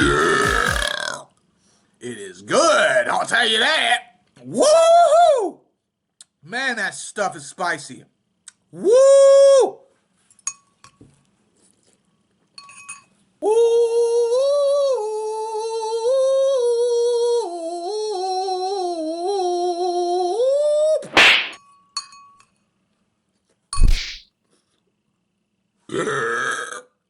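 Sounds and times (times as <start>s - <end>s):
man humming a tune: 0.0s - 0.9s.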